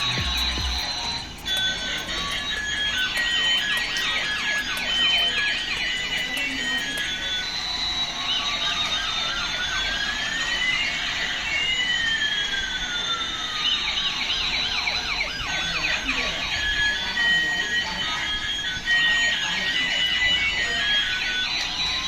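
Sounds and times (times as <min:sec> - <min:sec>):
fast siren warble: 0:00.0 - 0:22.0
toy police siren wailing: 0:00.0 - 0:22.0.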